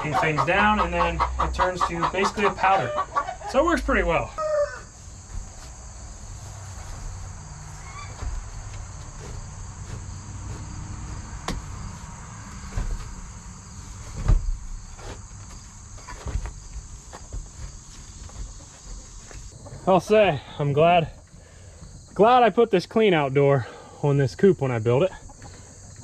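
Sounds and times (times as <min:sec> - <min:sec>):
insects chirring: 0:00.0 - 0:26.0.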